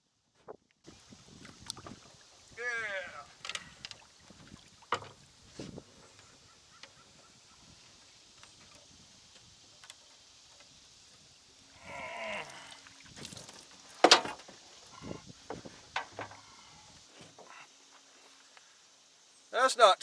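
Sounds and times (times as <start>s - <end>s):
knocks of gear in a fishing boat: 4.9s - 5.2s, 13.2s - 14.6s, 15.4s - 16.5s
catfish grunt: 11.8s - 12.9s.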